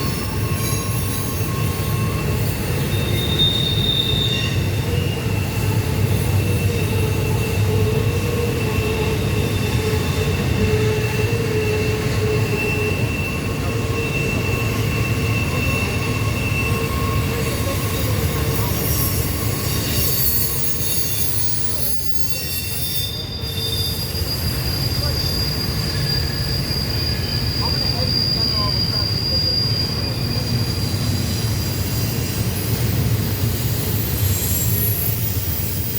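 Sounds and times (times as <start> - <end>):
freight train rumble: 0.0 - 35.9
wheel flanges squealing on rails: 0.0 - 35.9.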